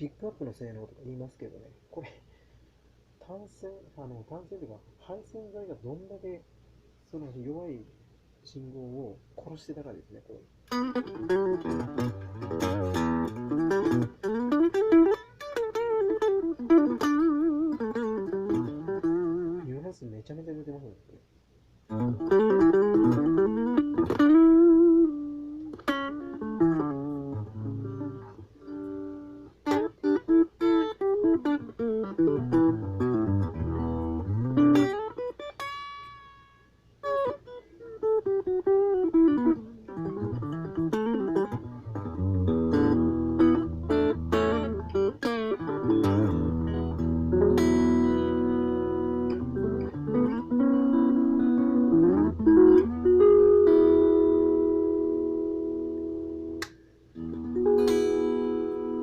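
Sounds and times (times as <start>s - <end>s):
electric guitar chords: 10.7s - 19.6s, 21.9s - 59.0s
electric guitar single notes: 10.7s - 19.6s, 21.9s - 59.0s.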